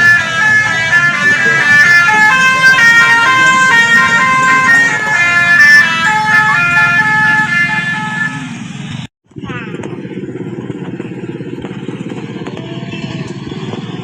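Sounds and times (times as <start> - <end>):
electronic melody from vehicle: 0.0 - 8.6
engine hum: 0.0 - 14.0.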